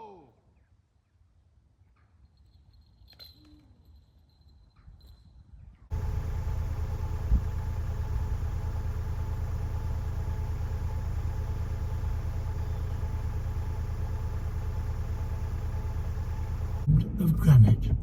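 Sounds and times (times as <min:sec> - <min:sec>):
engine running with low pulse: 0:05.9 - 0:18.0.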